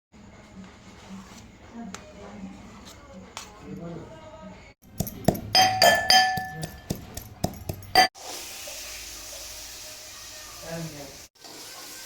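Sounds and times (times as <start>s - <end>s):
dishes and utensils clinking: 4.9s - 8.1s.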